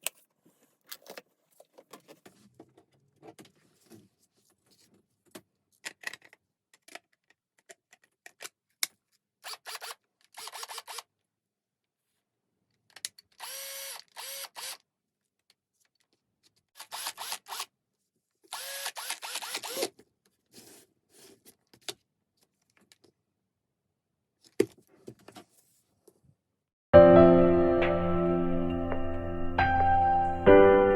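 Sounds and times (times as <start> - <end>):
cordless drill whining: 9.4 - 11.0, 13.4 - 14.8, 16.8 - 17.7, 18.5 - 19.9
music: 27.0 - 30.9.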